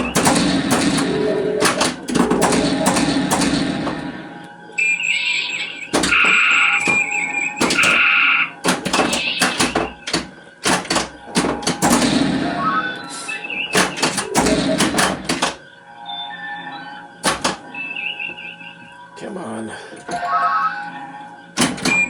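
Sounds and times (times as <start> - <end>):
pinball knocks and clacks: 0.0 - 4.1, 5.9 - 12.5, 13.7 - 15.6, 17.2 - 17.6, 21.6 - 22.0
electronic game beeps: 0.0 - 22.0.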